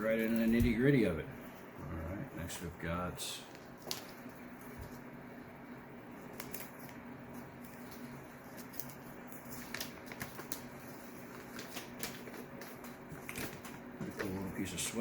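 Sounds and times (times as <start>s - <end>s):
steady low hum: 0.0s - 15.0s
packaging clicks and rustles: 6.2s - 14.7s.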